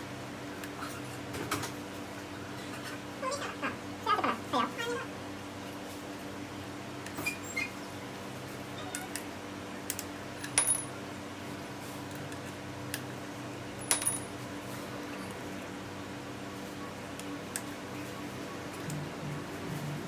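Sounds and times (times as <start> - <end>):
metallic clinks of chain and tool: 13.8 - 14.3.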